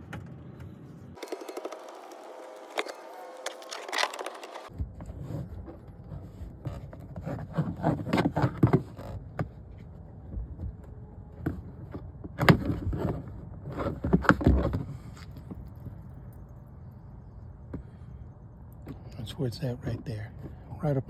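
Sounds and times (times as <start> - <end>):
clicks and scrapes of hands on plastic: 2.6 - 10.5.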